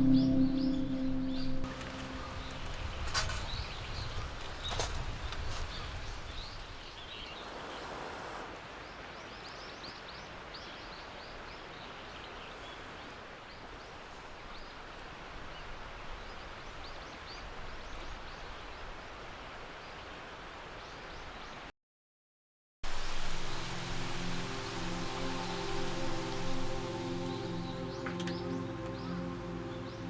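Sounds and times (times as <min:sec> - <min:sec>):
outdoor background hiss: 0:00.0 - 0:21.7, 0:22.8 - 0:30.0
small birds chirping: 0:23.4 - 0:30.0.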